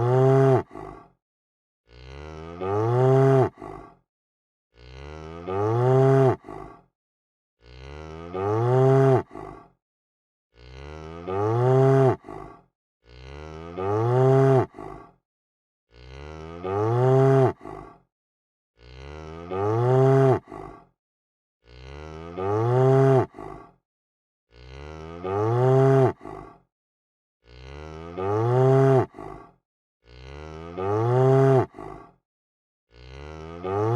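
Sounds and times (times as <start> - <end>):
cow mooing: 0.0 - 0.6, 1.9 - 3.6, 4.8 - 6.4, 7.6 - 9.3, 10.6 - 12.3, 13.1 - 14.7, 15.9 - 17.6, 18.8 - 20.5, 21.7 - 23.4, 24.5 - 26.2, 27.5 - 29.1, 30.1 - 31.8, 32.9 - 33.9.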